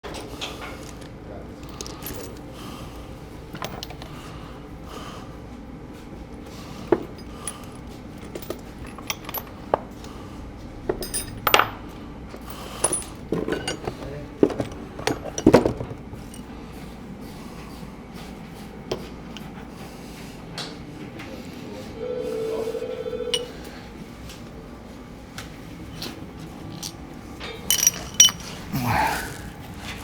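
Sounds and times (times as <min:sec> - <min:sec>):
metallic clinks of hand tools: 0:27.7 - 0:28.6.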